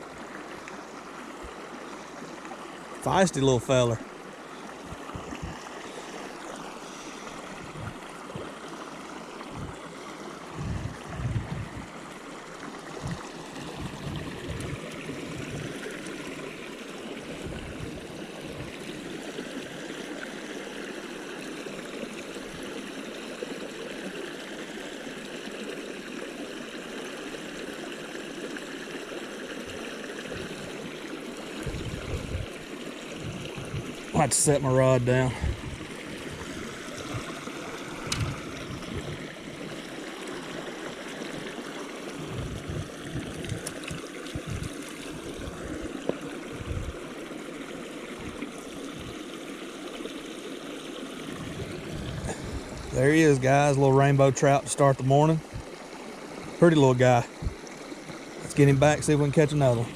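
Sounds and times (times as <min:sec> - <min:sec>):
stream flowing: 0:00.0 - 0:59.9
short low thumps: 0:04.9 - 0:05.6, 0:07.6 - 0:08.5, 0:09.5 - 0:09.8, 0:10.6 - 0:11.9, 0:13.0 - 0:15.7, 0:31.6 - 0:32.5, 0:33.2 - 0:34.1, 0:35.3 - 0:37.4, 0:42.2 - 0:44.8, 0:46.5 - 0:47.0.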